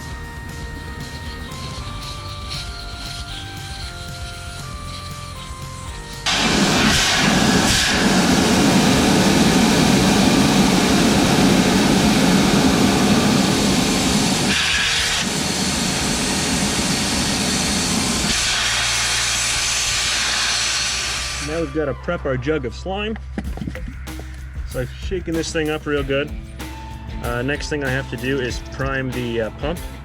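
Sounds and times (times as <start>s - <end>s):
air hissing from tire valve: 0.0s - 21.6s.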